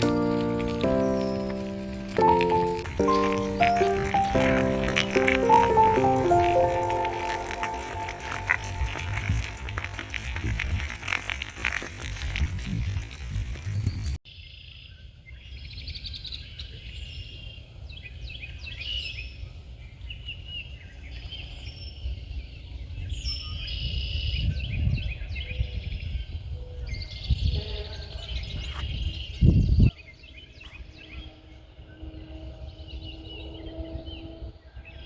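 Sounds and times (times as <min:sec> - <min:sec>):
songbirds chirping and trilling: 0:00.0 - 0:10.4
steady low rumble: 0:00.0 - 0:11.4.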